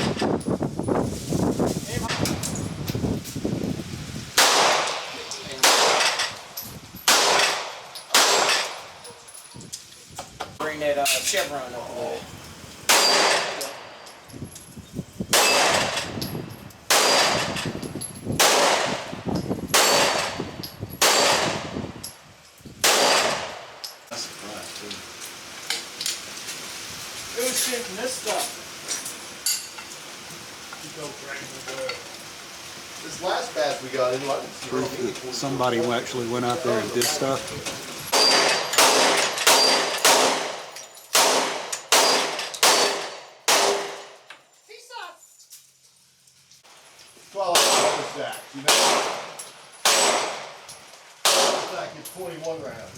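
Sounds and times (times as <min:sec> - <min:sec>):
gunshots with long echo: 0:04.4 - 0:06.2, 0:07.1 - 0:08.8, 0:15.3 - 0:16.1, 0:18.4 - 0:19.1, 0:19.7 - 0:20.4, 0:21.0 - 0:21.7, 0:22.8 - 0:23.7, 0:38.1 - 0:44.1, 0:48.7 - 0:50.6, 0:51.2 - 0:51.7
pistol shots: 0:04.4 - 0:06.3, 0:07.1 - 0:08.9, 0:12.9 - 0:13.9, 0:15.3 - 0:16.1, 0:16.9 - 0:17.6, 0:18.4 - 0:19.1, 0:19.7 - 0:20.4, 0:21.0 - 0:21.8, 0:22.8 - 0:23.7, 0:38.1 - 0:44.2, 0:47.6 - 0:50.6, 0:51.2 - 0:51.8.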